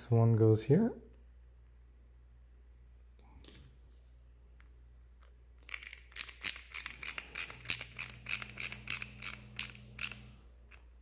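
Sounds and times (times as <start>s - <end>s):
screwdriver scratchy clicks: 5.6s - 10.9s.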